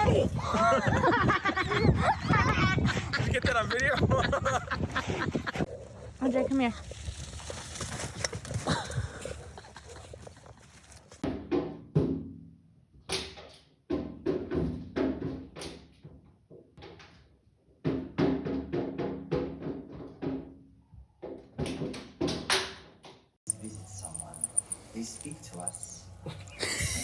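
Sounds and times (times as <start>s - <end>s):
music with drum hits: 11.3s - 12.5s.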